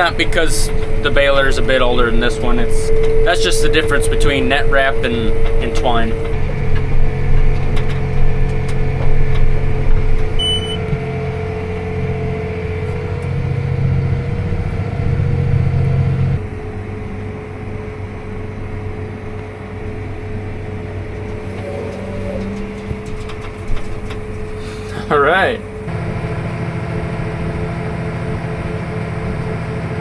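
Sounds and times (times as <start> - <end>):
steady whine: 0.0 - 30.0
tractor engine running: 0.0 - 30.0
short high beep: 10.4 - 10.8.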